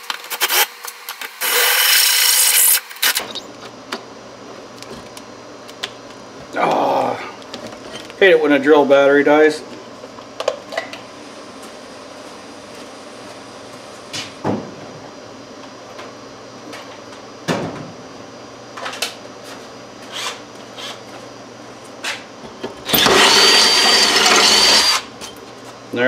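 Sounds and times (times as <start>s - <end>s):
cordless drill whining: 22.9s - 25.1s.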